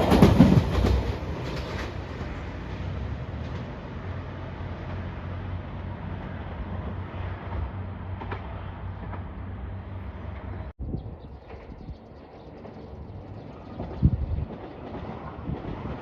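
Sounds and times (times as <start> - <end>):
train rumbling past: 0.0 - 16.0
wind noise on microphone: 10.8 - 12.4, 13.1 - 16.0.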